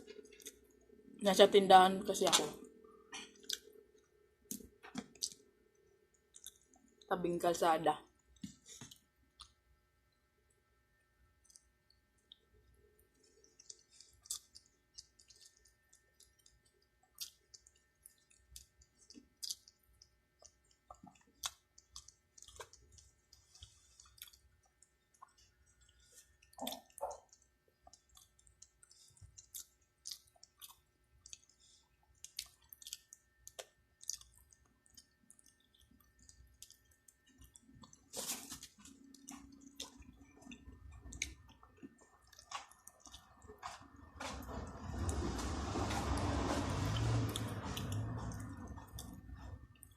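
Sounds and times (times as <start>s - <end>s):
person chewing with mouth smacks: 3.1s - 5.5s, 6.1s - 7.0s, 13.1s - 44.6s, 47.0s - 49.9s.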